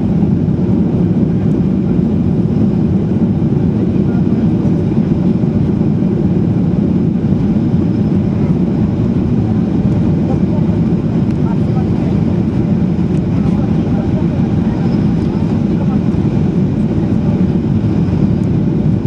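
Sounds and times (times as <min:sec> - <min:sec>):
airplane cabin rumble: 0:00.0 - 0:19.0.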